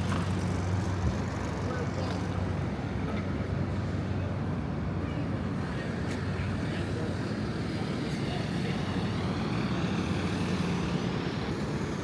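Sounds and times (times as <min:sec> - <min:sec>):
passing traffic rumble: 0:00.0 - 0:12.0.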